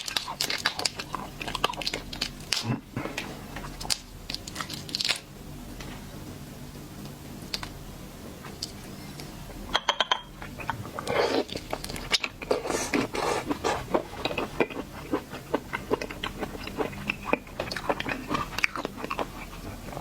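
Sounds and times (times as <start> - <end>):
seafood shells crunching: 0.0 - 2.7, 3.8 - 5.3.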